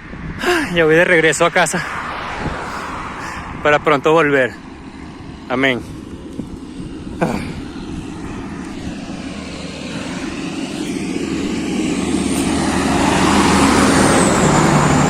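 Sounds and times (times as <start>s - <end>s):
truck engine running: 4.2s - 15.0s.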